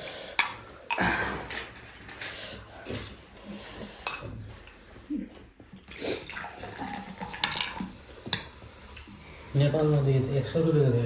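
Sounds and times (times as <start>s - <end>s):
utensils and containers clattering: 0.0s - 11.0s
chewing: 0.3s - 10.8s.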